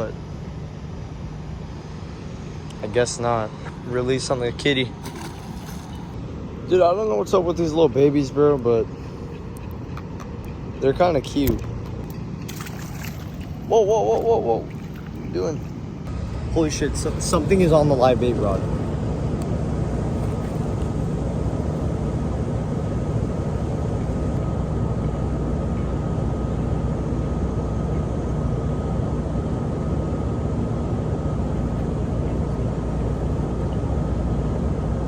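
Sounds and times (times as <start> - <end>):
low outdoor rumble: 0.0 - 35.0.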